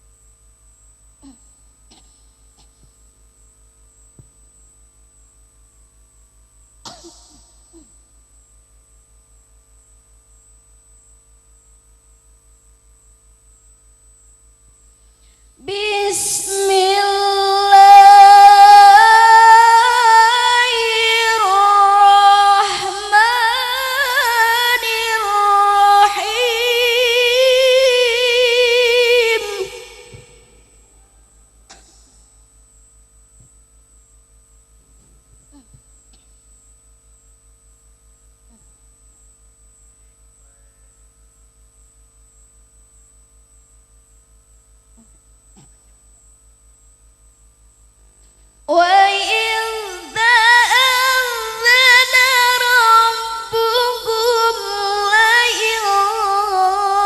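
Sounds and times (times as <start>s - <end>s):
low electrical hum: 0.0s - 57.0s
thin high whine: 0.0s - 57.0s
person chanting melodic recitation: 15.6s - 30.5s, 48.7s - 57.0s.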